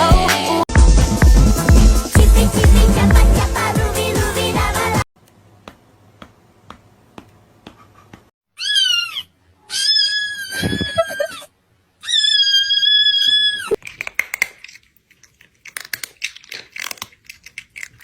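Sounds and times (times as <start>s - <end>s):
cat meowing: 8.6s - 13.8s.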